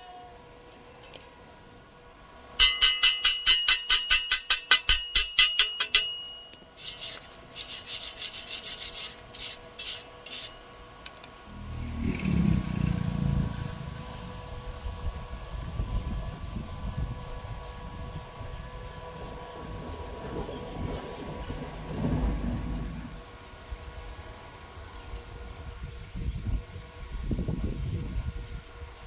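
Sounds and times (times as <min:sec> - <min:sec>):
hand tool scraping metal: 0:02.6 - 0:11.3
deep rumbling noise: 0:11.5 - 0:23.3.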